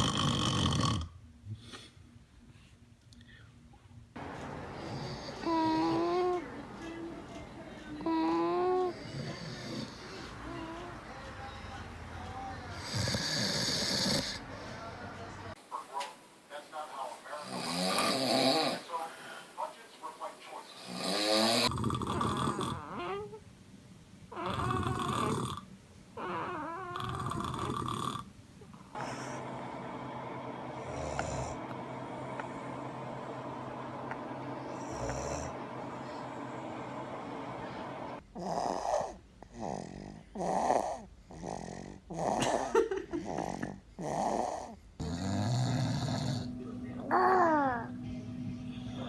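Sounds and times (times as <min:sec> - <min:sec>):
man snoring: 0:00.0 - 0:01.1, 0:04.2 - 0:06.5, 0:08.0 - 0:10.7, 0:12.8 - 0:15.0, 0:17.5 - 0:18.8, 0:20.8 - 0:23.2, 0:24.4 - 0:25.6, 0:26.2 - 0:28.3, 0:29.0 - 0:42.6, 0:43.2 - 0:47.9
faint steady hiss: 0:01.3 - 0:38.4
quiet breath: 0:01.4 - 0:06.3, 0:12.4 - 0:15.2.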